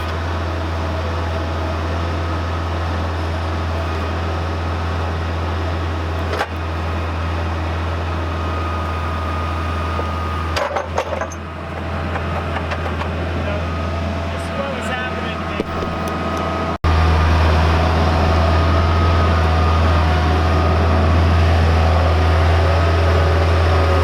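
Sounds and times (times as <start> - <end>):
skid steer engine droning: 0.0 - 24.0
steady whine: 7.7 - 24.0
knock and clunks: 10.6 - 13.2.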